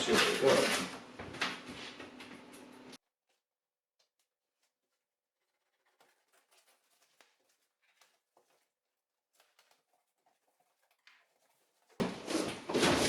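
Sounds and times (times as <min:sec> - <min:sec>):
cardboard rustling and scraping: 0:04.1 - 0:13.0
faint scratches and taps: 0:05.4 - 0:12.1.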